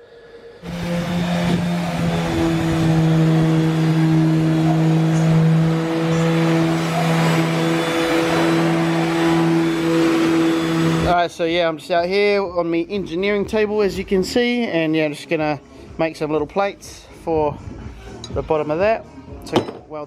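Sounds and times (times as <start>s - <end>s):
angle grinder cutting metal: 0.6s - 11.1s.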